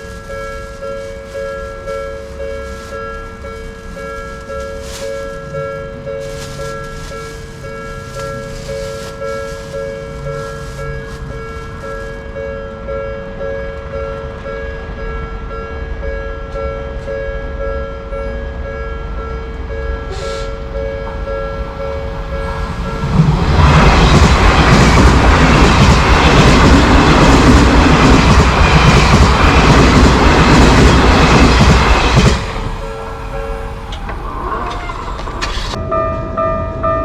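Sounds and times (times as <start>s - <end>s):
train wheels rumbling on rails: 0.0s - 37.0s.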